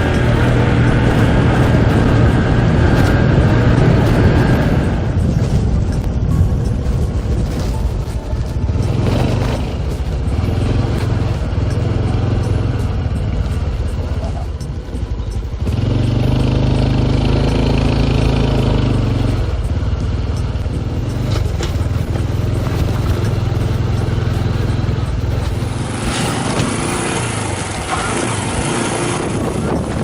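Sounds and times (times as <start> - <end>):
motorcycle engine humming: 0.0 - 30.0.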